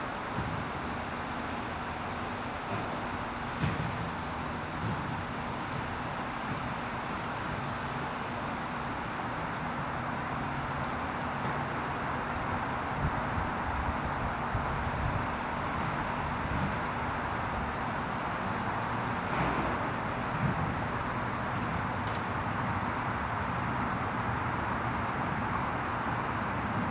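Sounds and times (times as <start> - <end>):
steady traffic noise: 0.0 - 26.9.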